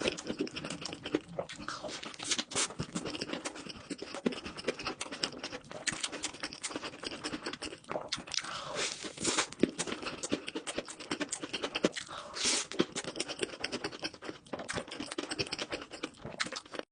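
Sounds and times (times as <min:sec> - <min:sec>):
close-miked chewing crunches: 0:00.0 - 0:16.9.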